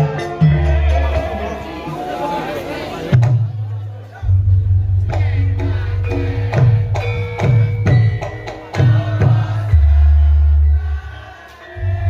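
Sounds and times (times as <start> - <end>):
ringing metallophone notes: 0.0 - 2.4, 4.2 - 12.0
loud deep low tone: 4.2 - 6.6
hand drum strokes: 4.2 - 10.1.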